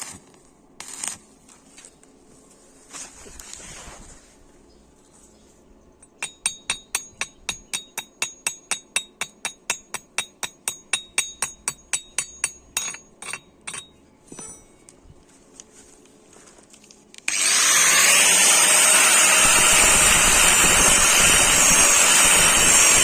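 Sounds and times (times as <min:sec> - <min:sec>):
hammer rapping on steel: 0:06.0 - 0:14.7.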